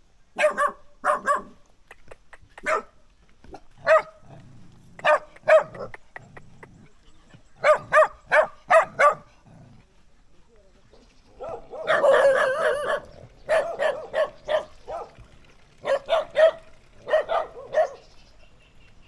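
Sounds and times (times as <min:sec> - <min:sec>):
dog barking: 0:00.4 - 0:01.6, 0:02.6 - 0:03.0, 0:03.8 - 0:04.2, 0:05.0 - 0:06.0, 0:07.6 - 0:09.3, 0:11.4 - 0:15.2, 0:15.8 - 0:18.1.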